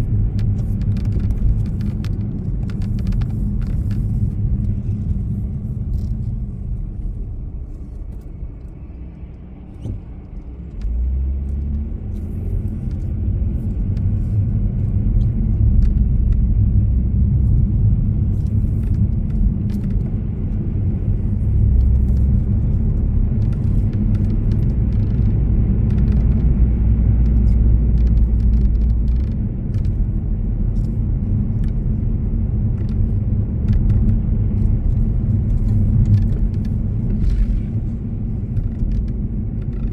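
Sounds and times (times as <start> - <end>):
road and engine rumble: 0.0 - 39.9.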